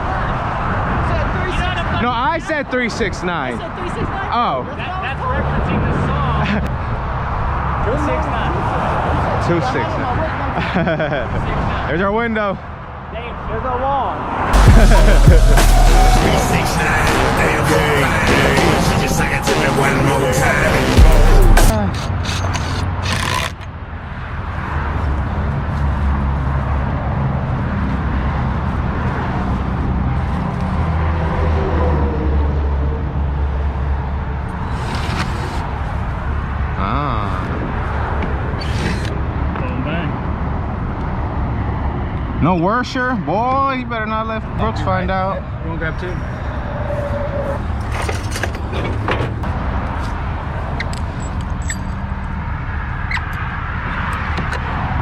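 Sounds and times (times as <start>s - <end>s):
road noise: 0.0s - 55.0s
vehicle engine rumble: 14.6s - 41.5s, 44.4s - 55.0s
knocks and clanks: 47.8s - 49.5s.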